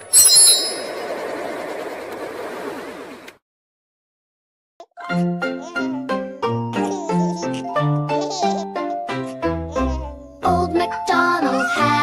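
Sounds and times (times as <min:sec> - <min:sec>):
instrumental children's song music: 0:04.9 - 0:12.0.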